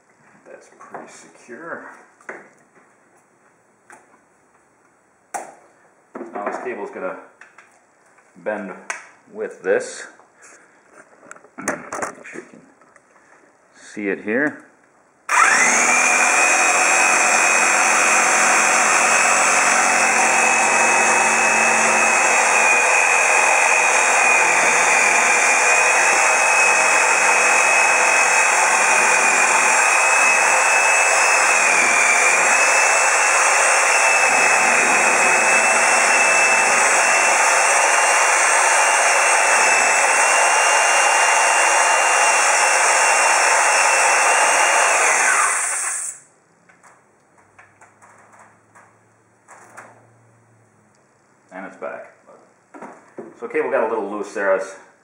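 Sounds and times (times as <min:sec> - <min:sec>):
scroll saw whining: 0:15.3 - 0:46.3.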